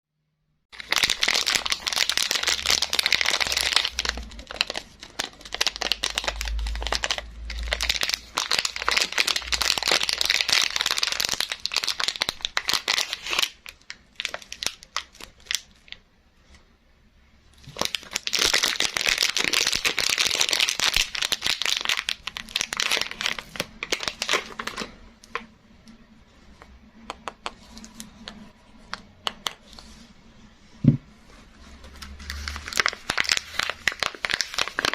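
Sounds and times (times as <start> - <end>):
wrapper crinkling and tearing: 0.7 - 16.0, 17.6 - 25.5, 31.7 - 34.9.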